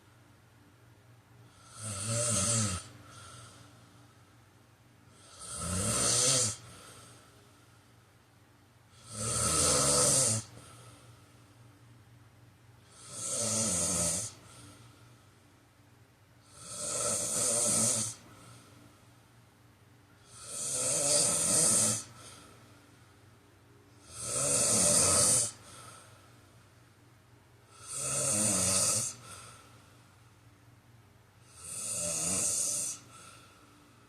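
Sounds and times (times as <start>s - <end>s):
quiet breathing: 0.0s - 34.0s
person snoring: 1.5s - 3.7s, 5.1s - 7.2s, 8.9s - 11.0s, 12.8s - 14.9s, 16.4s - 18.7s, 20.2s - 22.5s, 24.0s - 26.1s, 27.7s - 29.7s, 31.4s - 33.5s.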